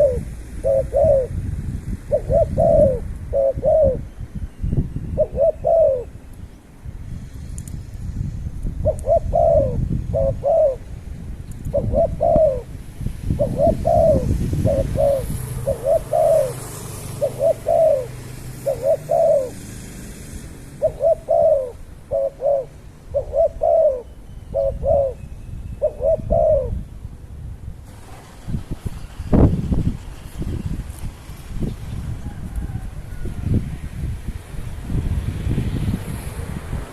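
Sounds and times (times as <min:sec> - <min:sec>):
bird cooing: 0:00.0 - 0:01.4, 0:02.1 - 0:06.2, 0:08.8 - 0:10.9, 0:11.7 - 0:12.8, 0:13.4 - 0:19.7, 0:20.8 - 0:26.9, 0:32.2 - 0:33.3.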